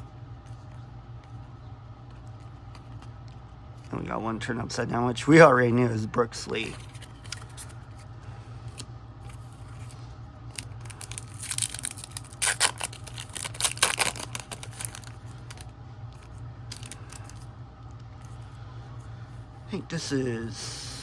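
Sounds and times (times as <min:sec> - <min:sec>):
low steady hum: 0:00.0 - 0:21.0
foil wrapper tearing and crinkling: 0:10.5 - 0:17.5.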